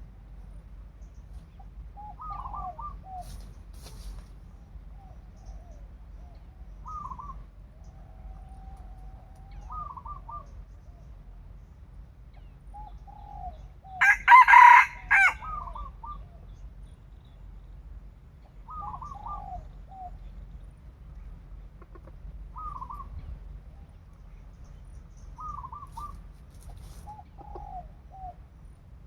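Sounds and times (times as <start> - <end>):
rooster crowing: 14.0 - 15.8
soft clucking calls: 21.6 - 23.3, 25.4 - 28.4.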